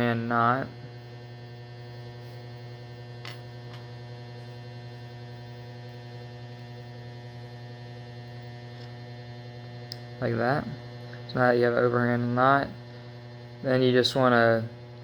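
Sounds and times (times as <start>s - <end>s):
electrical mains hum: 0.0s - 15.0s.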